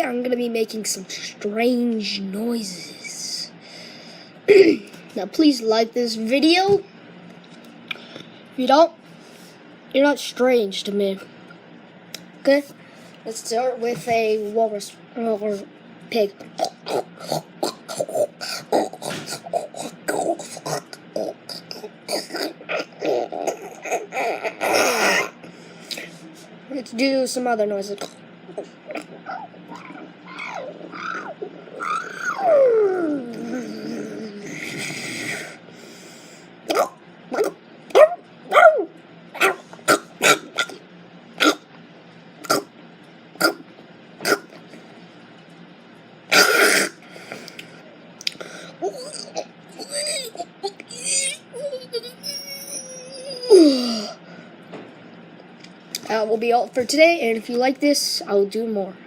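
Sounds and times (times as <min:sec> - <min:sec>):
person imitating animal grunts: 0:16.6 - 0:25.4, 0:28.0 - 0:35.6
person imitating dog barking: 0:28.9 - 0:34.7, 0:48.8 - 0:54.0.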